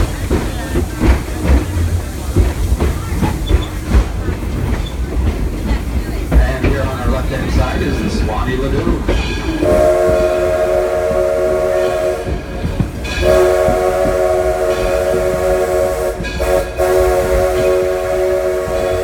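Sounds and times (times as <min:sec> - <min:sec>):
train rumbling: 0:00.0 - 0:19.0
steam locomotive whistle: 0:09.6 - 0:19.0.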